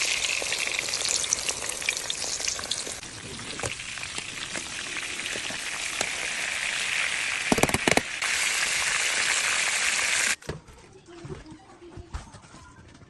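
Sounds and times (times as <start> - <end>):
chicken sizzling in hot oil: 0.0 - 10.4.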